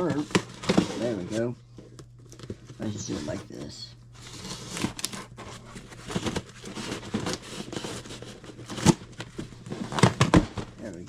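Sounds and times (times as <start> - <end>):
tape tearing and crinkling: 4.2 - 10.6.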